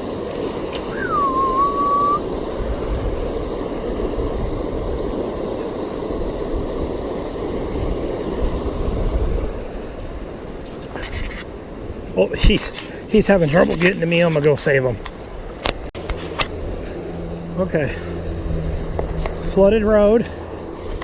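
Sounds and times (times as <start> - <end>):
wind buffeting microphone: 0.0 - 14.2
creek water rushing: 0.0 - 21.0
short falling whistle: 0.9 - 2.2.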